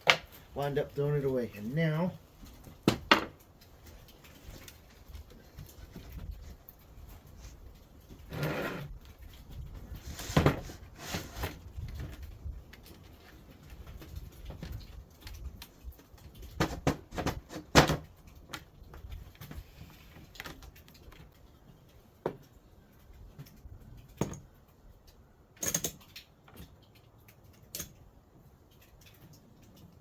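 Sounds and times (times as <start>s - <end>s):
wooden knocks and clicks: 0.0s - 0.4s, 2.5s - 4.6s.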